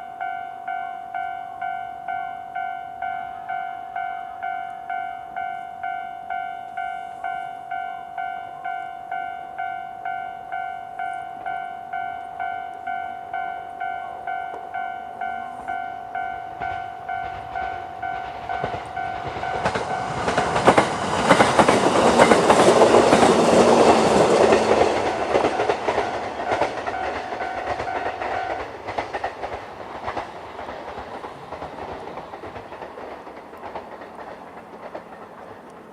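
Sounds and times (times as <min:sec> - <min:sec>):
level-crossing alarm bell: 0:00.0 - 0:28.7
electric train passing: 0:00.0 - 0:35.9.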